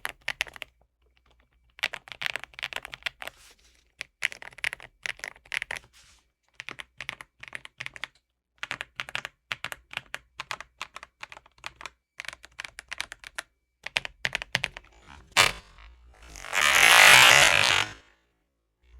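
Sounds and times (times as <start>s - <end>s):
mechanical keyboard typing: 0.0s - 0.8s, 1.7s - 3.3s, 4.0s - 5.8s, 6.6s - 14.9s.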